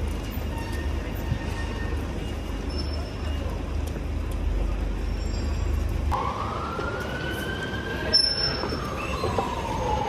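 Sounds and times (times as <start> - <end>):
city street noise: 0.0 - 10.0
siren wailing: 6.1 - 10.0.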